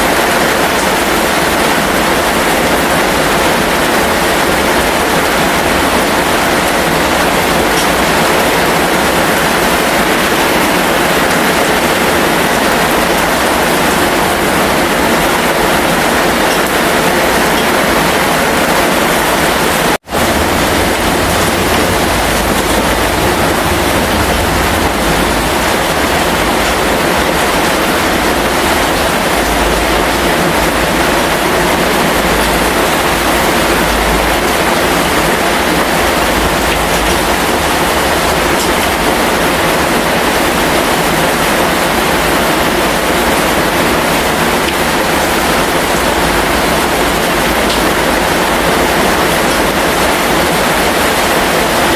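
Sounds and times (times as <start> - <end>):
heavy rain hissing: 0.0 - 51.9
low rumble: 20.1 - 27.0.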